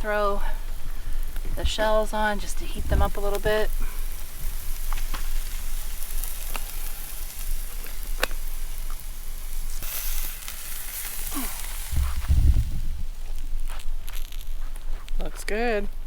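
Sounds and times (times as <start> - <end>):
steak sizzling on a grill: 0.0 - 16.0
sharp pops: 2.6 - 3.8, 11.3 - 15.4
low rumble: 11.9 - 13.6.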